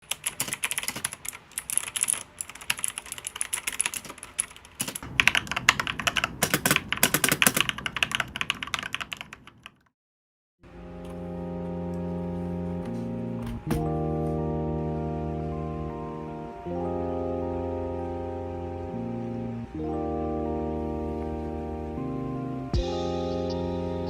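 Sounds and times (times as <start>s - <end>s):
fast typing on mechanical keyboard: 0.0s - 9.9s.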